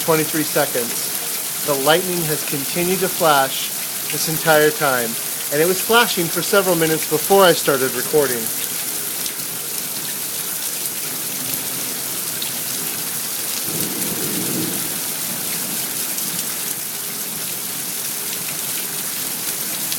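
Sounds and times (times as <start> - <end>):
rain pattering on surfaces: 0.0 - 19.9
low thunder rumble: 13.6 - 15.0.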